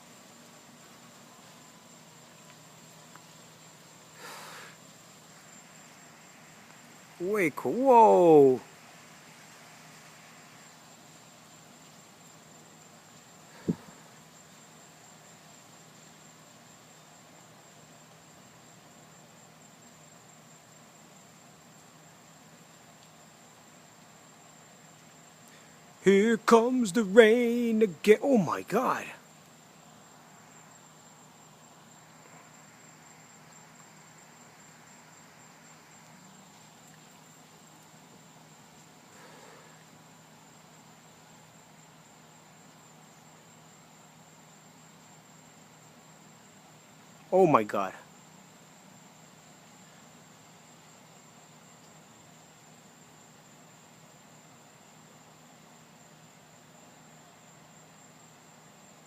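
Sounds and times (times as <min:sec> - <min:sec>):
crickets trilling: 0:00.0 - 0:59.0
faint background hiss: 0:00.0 - 0:59.0
short thump: 0:13.6 - 0:13.9.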